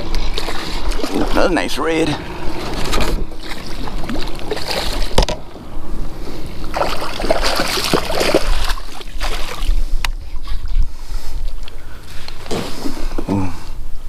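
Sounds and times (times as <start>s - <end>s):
fish splashing and rustling: 0.0s - 1.8s, 2.5s - 5.2s, 6.5s - 10.7s
wind rumbling on microphone: 0.0s - 14.0s.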